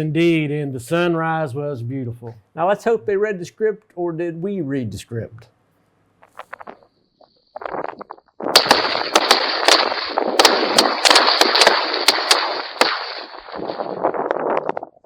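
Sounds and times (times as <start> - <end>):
dense continuous noise: 7.6 - 15.0
shotguns firing: 8.5 - 14.0.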